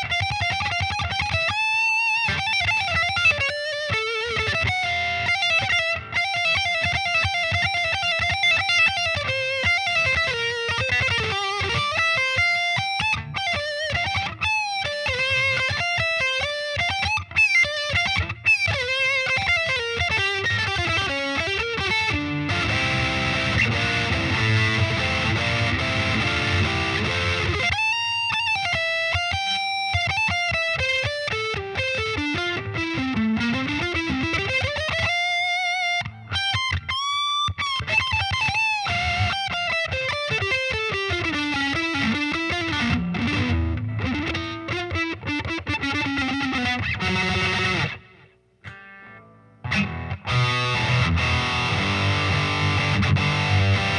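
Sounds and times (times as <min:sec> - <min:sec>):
electric guitar chords: 0:00.0 - 0:53.9
electric guitar lead lines: 0:00.0 - 0:53.9.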